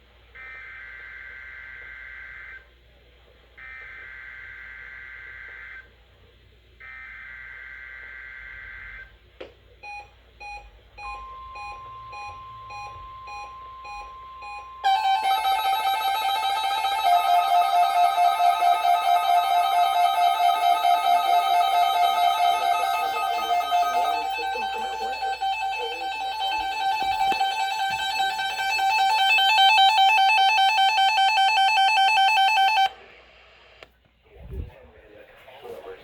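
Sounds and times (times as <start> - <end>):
steady warning alarm tone: 9.8 - 33.0
guitar music: 14.9 - 32.8
screeching data bursts: 14.9 - 32.8
repeating beep: 17.1 - 32.9.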